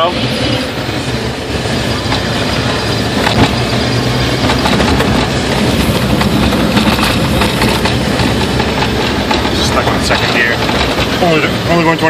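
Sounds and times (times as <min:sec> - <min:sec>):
car engine hum: 0:00.0 - 0:12.0
tyre and road noise: 0:00.0 - 0:12.0.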